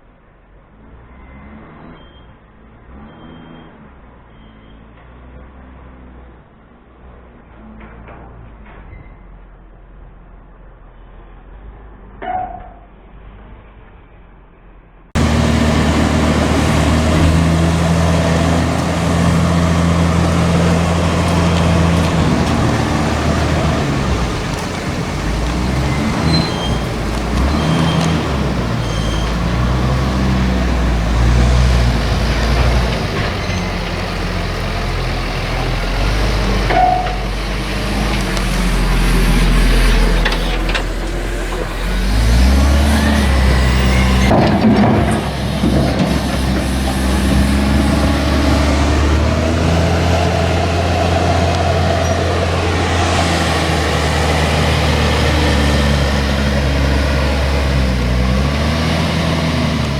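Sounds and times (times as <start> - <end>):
diesel farm machinery engine: 15.1 - 59.9.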